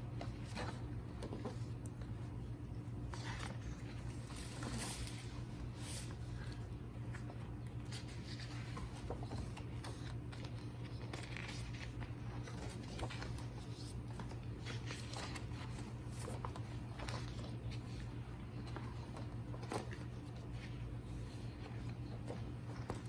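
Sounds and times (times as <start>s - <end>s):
pages turning: 0.0s - 23.0s
steady low hum: 0.0s - 23.0s.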